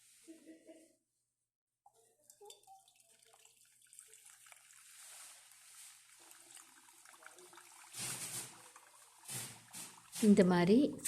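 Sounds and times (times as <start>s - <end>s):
juice trickling through strainer: 1.9s - 10.3s.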